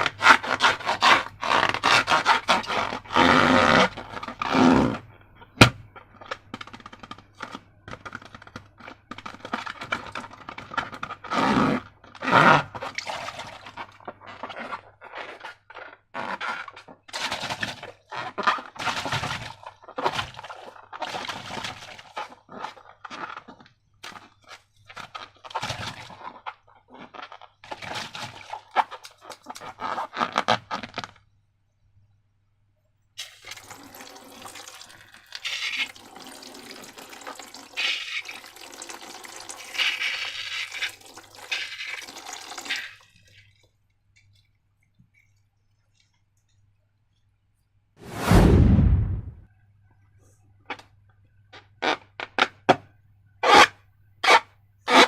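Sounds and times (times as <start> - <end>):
slime squelching: 12.0 - 23.6.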